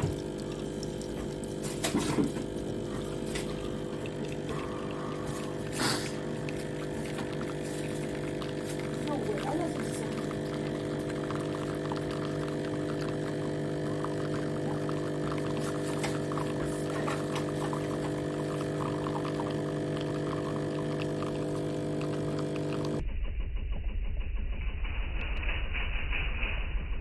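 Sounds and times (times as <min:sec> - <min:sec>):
espresso machine pump humming: 0:00.0 - 0:23.0.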